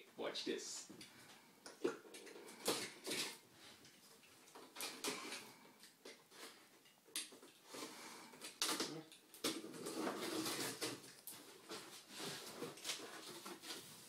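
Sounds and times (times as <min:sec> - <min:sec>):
cardboard rustling and scraping: 0:09.5 - 0:14.0.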